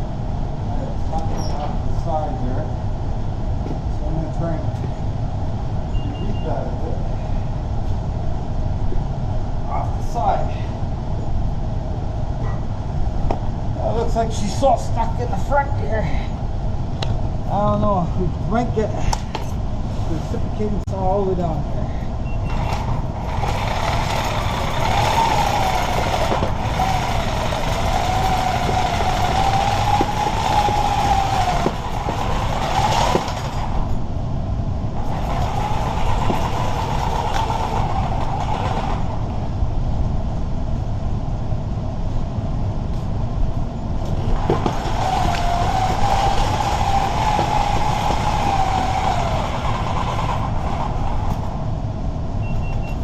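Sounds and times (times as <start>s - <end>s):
low rumble: 0.0s - 52.9s
reciprocating saw cutting debris: 22.5s - 33.9s, 35.0s - 39.2s, 44.2s - 51.6s.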